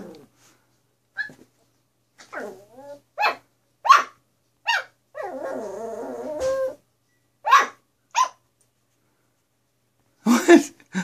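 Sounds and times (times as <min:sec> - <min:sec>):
dog barking: 0:03.2 - 0:05.0, 0:07.4 - 0:08.4.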